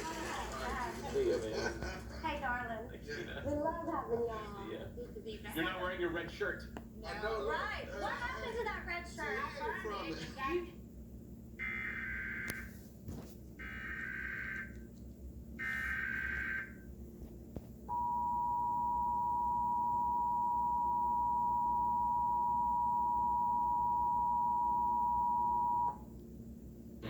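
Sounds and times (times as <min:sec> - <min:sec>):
two-tone attention signal: 0:17.9 - 0:26.0.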